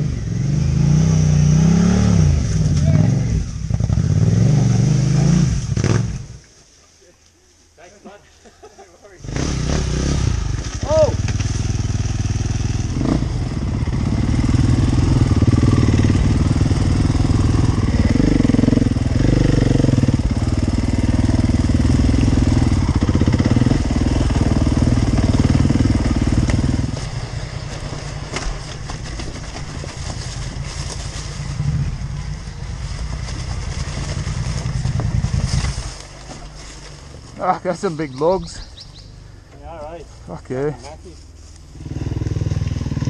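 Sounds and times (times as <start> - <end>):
motorcycle engine running: 9.4 - 37.6, 41.4 - 43.0.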